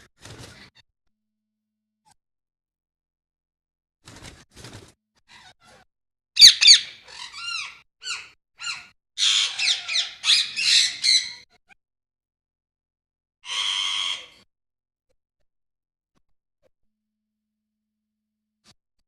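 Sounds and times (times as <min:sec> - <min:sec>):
parrots squawking: 0:06.4 - 0:11.4, 0:13.4 - 0:14.4.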